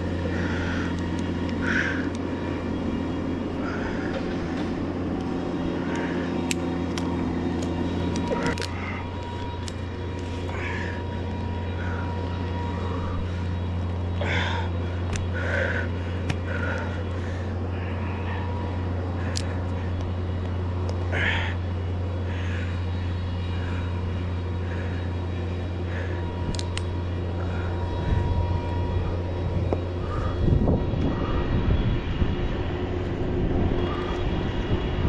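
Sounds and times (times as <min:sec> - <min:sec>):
engine drone: 0:00.0 - 0:35.0
sharp clicks: 0:26.5 - 0:26.9.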